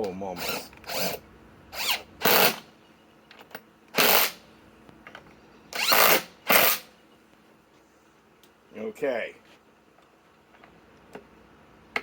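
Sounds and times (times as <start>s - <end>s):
impact driver bursts: 1.8s - 2.6s, 4.0s - 4.4s, 5.8s - 6.9s.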